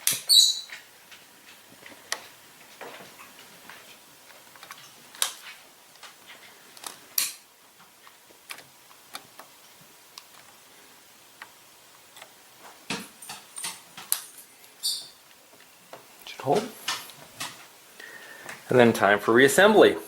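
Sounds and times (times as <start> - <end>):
small tools clicking and tapping: 11.4 - 17.6.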